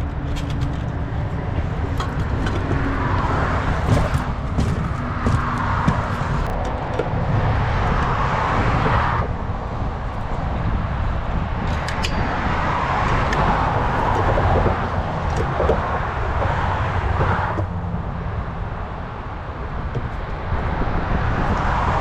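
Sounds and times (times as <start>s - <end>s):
rattling clicks: 0.0s - 7.2s
vehicle engine rumble: 0.0s - 22.0s.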